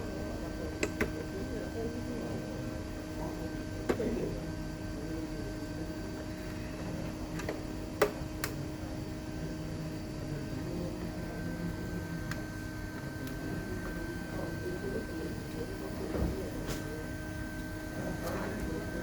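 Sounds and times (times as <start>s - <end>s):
low electrical hum: 0.0s - 19.0s.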